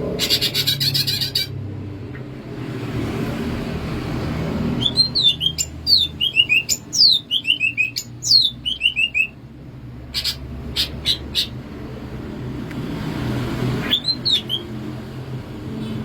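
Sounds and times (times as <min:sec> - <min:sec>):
bird singing whistled phrases: 0:04.8 - 0:09.4, 0:13.8 - 0:14.7
sharp bird chirps: 0:04.8 - 0:09.4, 0:13.8 - 0:14.8.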